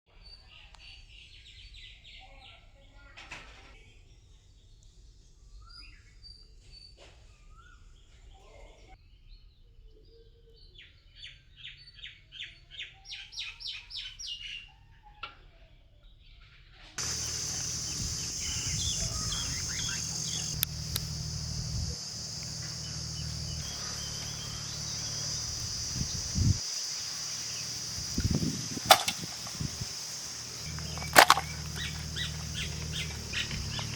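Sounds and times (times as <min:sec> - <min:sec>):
bird trilling: 0:17.0 - 0:33.9
high-pitched hiss: 0:17.0 - 0:33.9
low hum: 0:17.0 - 0:33.9
small birds chirping: 0:17.0 - 0:33.9
sharp clicks: 0:19.6 - 0:21.3, 0:28.8 - 0:29.9, 0:30.6 - 0:33.9.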